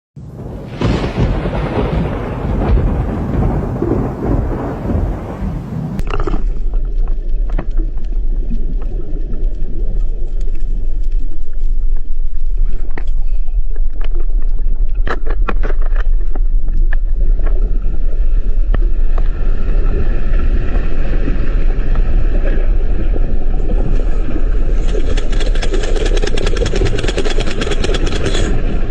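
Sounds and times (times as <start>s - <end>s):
deep underwater rumble: 0.4s - 28.9s
scattered clicks: 24.7s - 28.8s.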